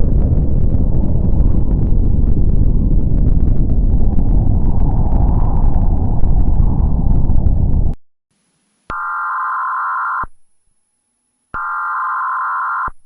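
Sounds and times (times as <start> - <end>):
deep explosion rumble: 0.0 - 8.0.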